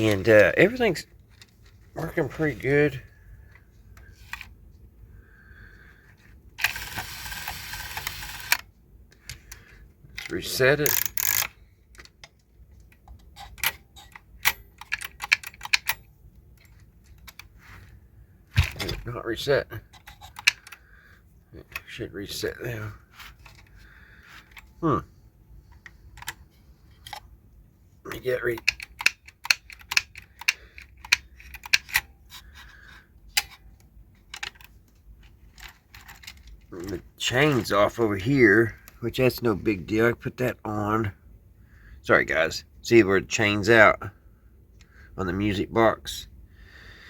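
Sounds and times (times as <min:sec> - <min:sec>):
clock mechanism clicks and knocks: 0:13.0 - 0:17.4, 0:28.5 - 0:32.1.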